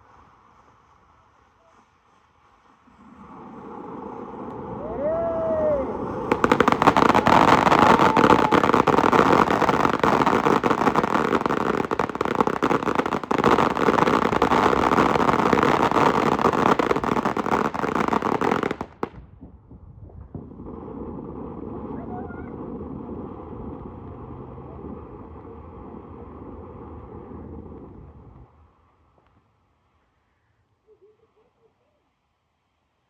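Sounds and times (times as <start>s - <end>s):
fireworks crackling: 0.0s - 24.2s.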